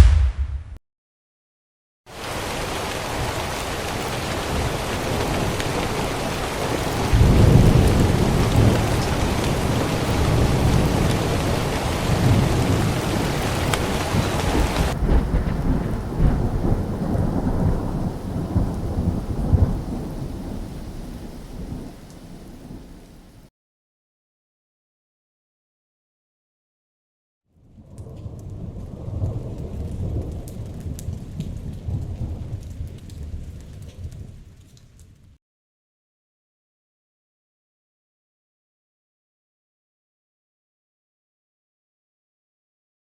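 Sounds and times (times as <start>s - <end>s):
rain hiss: 2.1s - 15.2s, 16.2s - 23.5s
deep rolling thunder: 2.3s - 23.2s, 28.0s - 34.4s.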